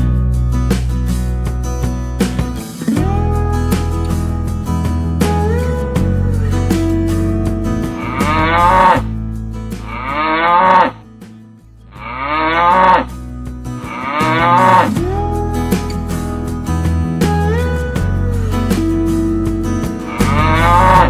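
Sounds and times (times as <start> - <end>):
acoustic guitar music: 0.0 - 21.0
cows mooing: 8.0 - 9.0, 9.9 - 11.0, 12.0 - 13.1, 13.8 - 15.0, 20.1 - 21.0.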